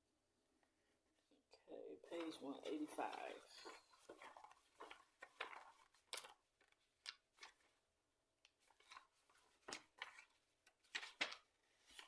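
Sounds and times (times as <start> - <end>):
book pages rustling: 2.1 - 7.9, 8.5 - 12.0.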